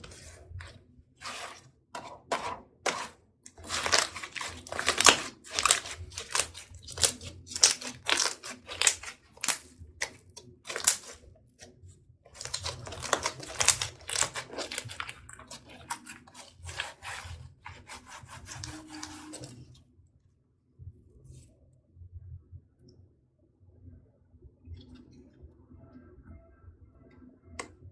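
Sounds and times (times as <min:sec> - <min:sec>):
slime squishing with sticky crackles: 0:02.9 - 0:19.8.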